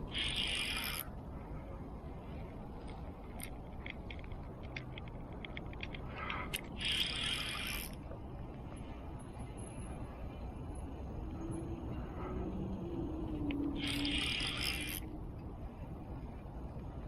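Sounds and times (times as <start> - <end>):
steady low rumble: 0.0 - 17.0
fishing reel clicking: 0.1 - 1.1, 6.5 - 8.0, 13.5 - 15.1.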